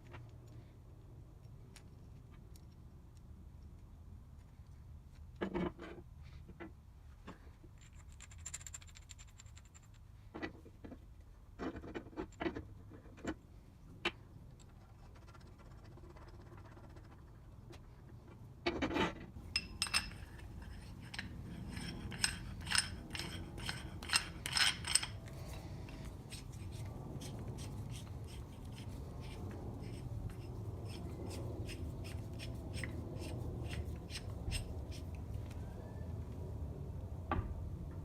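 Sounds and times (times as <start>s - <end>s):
metal parts clinking: 19.4s - 26.8s
ratchet clicking: 21.0s - 25.2s.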